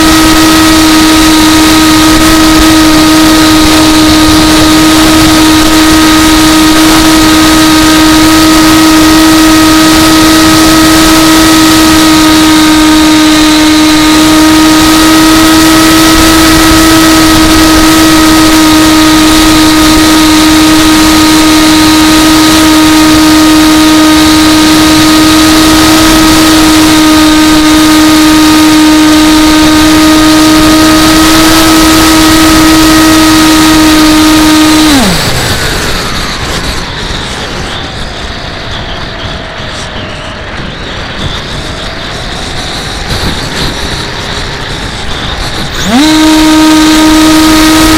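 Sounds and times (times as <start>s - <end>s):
model plane motor whine: 0.0s - 47.9s
rush of wind: 0.0s - 47.9s.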